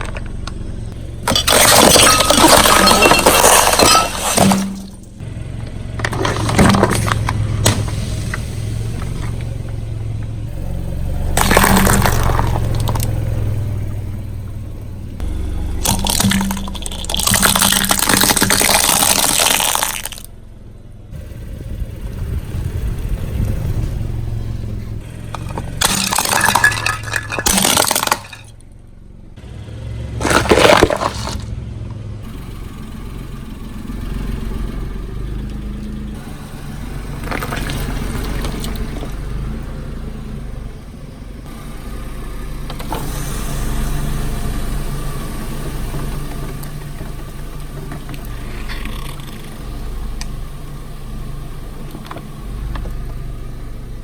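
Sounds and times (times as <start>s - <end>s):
objects cracking under car tyres: 0.0s - 8.4s, 11.3s - 13.9s, 15.2s - 20.3s, 25.0s - 28.8s, 30.2s - 31.5s, 37.1s - 39.2s, 45.9s - 50.4s, 51.8s - 53.2s
car engine running: 0.0s - 54.0s.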